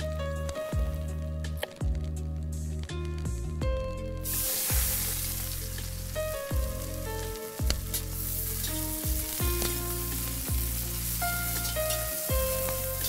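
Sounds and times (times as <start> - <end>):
background music: 0.0 - 13.0
food sizzling: 4.2 - 13.0.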